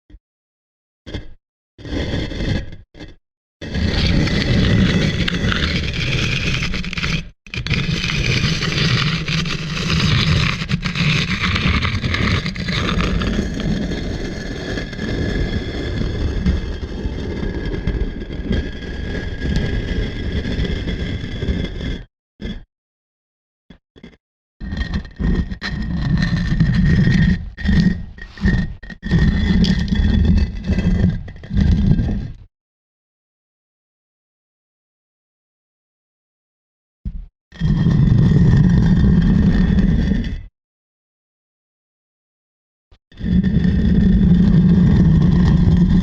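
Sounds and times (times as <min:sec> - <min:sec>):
stone block grinding on stone: 0:01.1 - 0:22.7, 0:23.7 - 0:32.4, 0:37.1 - 0:40.4, 0:43.0 - 0:46.0.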